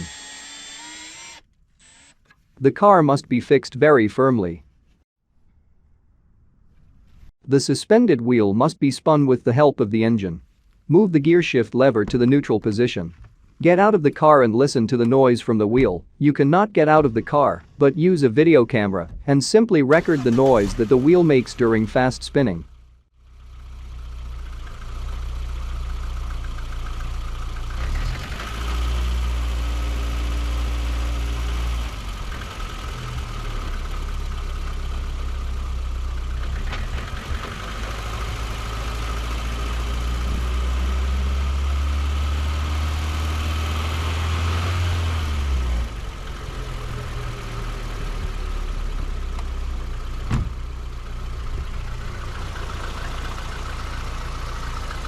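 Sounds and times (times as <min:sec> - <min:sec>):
car engine running: 0:20.0 - 0:55.0.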